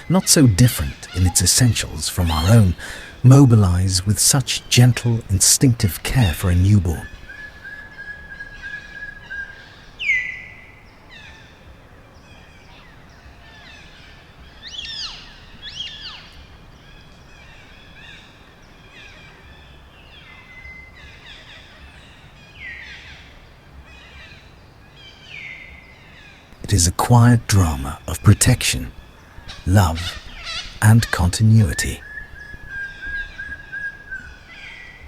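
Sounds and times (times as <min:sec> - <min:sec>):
birds chirping and whistling: 0:00.0 - 0:11.3, 0:14.5 - 0:16.4, 0:26.6 - 0:35.0.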